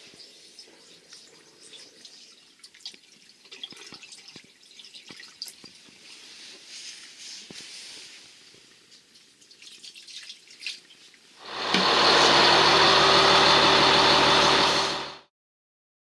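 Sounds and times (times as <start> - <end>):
water gushing from pipes: 0.0 - 6.3, 9.3 - 15.1
faint water dripping: 0.0 - 11.4
steady hum: 11.4 - 15.2.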